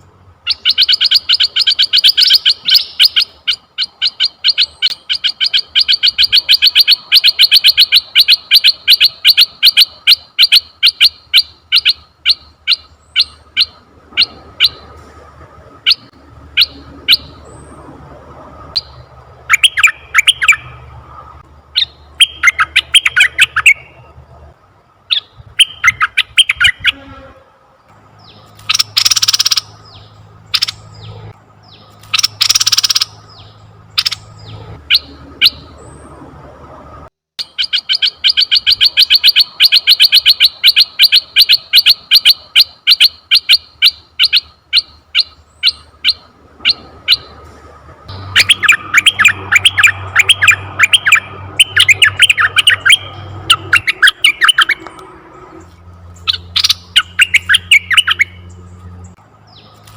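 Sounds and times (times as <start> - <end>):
bird chattering calls: 0.4 - 14.9, 18.8 - 20.8, 21.8 - 24.0, 25.1 - 27.0, 28.2 - 35.8, 37.4 - 47.4, 48.1 - 55.0, 55.6 - 58.6.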